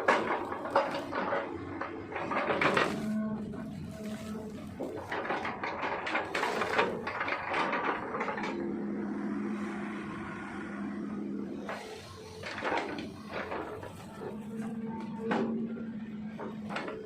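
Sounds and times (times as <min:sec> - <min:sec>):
excavator bucket chopping trunks: 0:00.0 - 0:09.3
diesel engine and hydraulics droning: 0:00.0 - 0:17.0.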